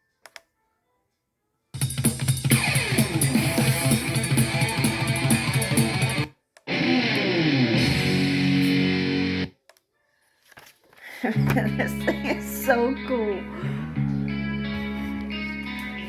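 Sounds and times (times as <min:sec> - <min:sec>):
rock music from speaker: 0:01.8 - 0:09.5, 0:11.5 - 0:16.0.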